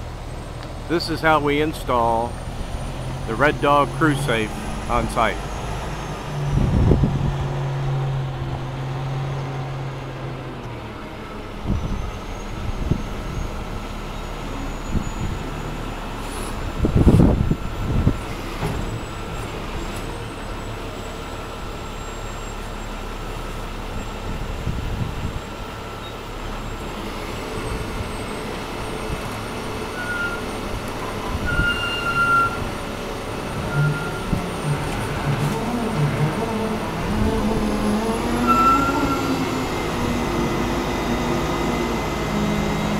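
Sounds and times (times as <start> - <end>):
heavy truck engine running: 0.0 - 42.9
faint squeals: 30.0 - 32.6, 33.5 - 34.9, 37.8 - 39.5.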